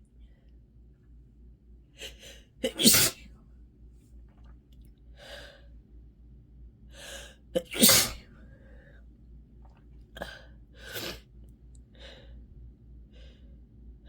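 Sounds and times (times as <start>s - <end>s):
person sneezing: 2.0s - 3.2s, 7.6s - 8.3s.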